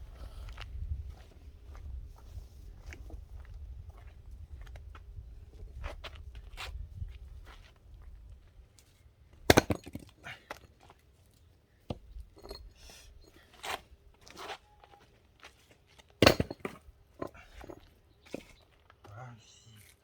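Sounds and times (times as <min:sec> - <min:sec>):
axe striking firewood: 0:09.4 - 0:10.2, 0:16.2 - 0:17.4.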